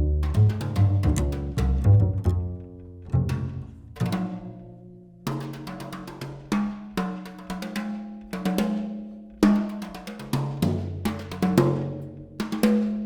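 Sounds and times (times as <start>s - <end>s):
low cello notes: 0.0s - 5.0s.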